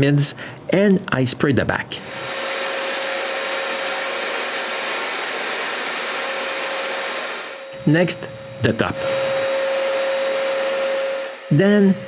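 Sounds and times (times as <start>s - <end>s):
spray gun hissing: 2.0s - 12.0s
faint steady whine: 7.6s - 12.0s.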